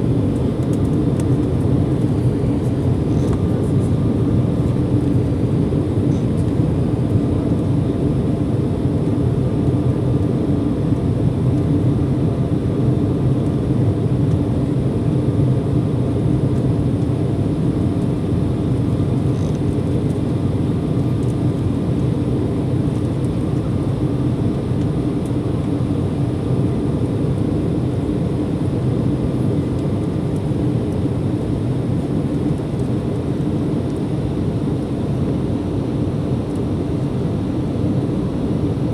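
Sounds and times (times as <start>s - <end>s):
jet engine drone: 0.0s - 38.9s.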